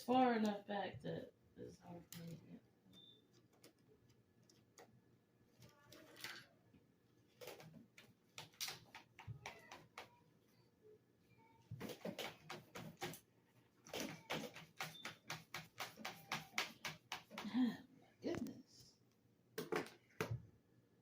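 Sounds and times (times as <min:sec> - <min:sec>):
plastic parts clicking and scraping: 0:03.3 - 0:06.6.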